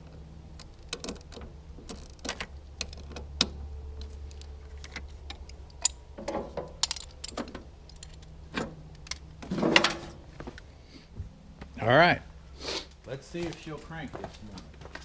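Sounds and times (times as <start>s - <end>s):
steady low hum: 0.0s - 15.0s
metal tools clinking: 4.0s - 10.2s.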